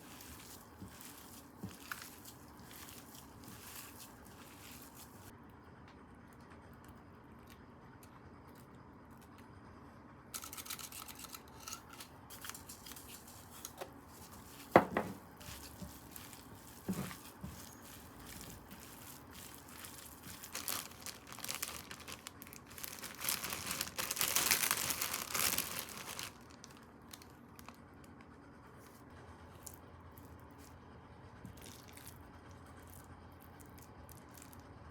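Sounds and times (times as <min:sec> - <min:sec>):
packaging crinkling and tearing: 0:00.0 - 0:05.3, 0:10.4 - 0:27.8.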